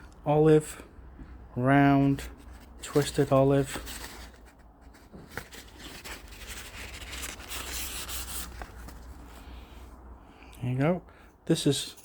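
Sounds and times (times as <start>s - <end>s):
cardboard packaging rubbing and scraping: 2.2s - 9.3s.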